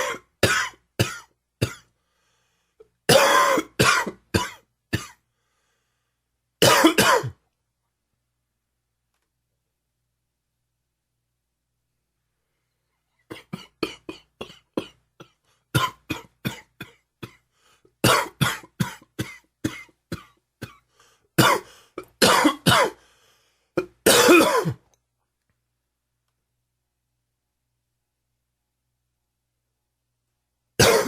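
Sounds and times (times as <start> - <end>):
man coughing: 0.0 - 1.9, 3.1 - 5.2, 6.6 - 7.4, 13.3 - 17.4, 18.0 - 20.8, 21.4 - 23.0, 23.8 - 24.9, 30.8 - 31.0.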